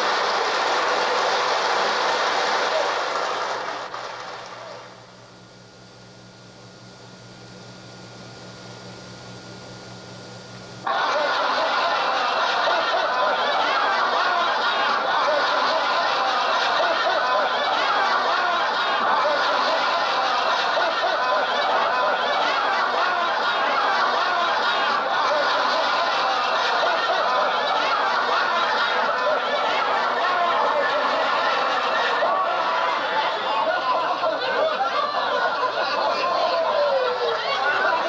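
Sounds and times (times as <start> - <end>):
mains hum: 2.7 - 38.0
tape hiss: 3.6 - 10.9.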